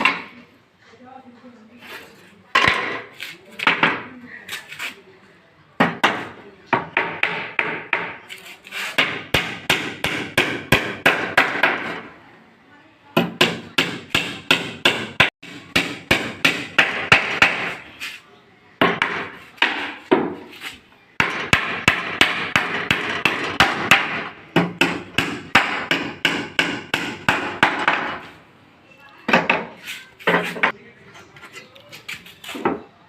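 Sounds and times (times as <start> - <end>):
hammer striking wood: 5.8 - 8.2, 9.0 - 12.1, 13.2 - 17.8, 18.8 - 20.5, 21.2 - 28.3.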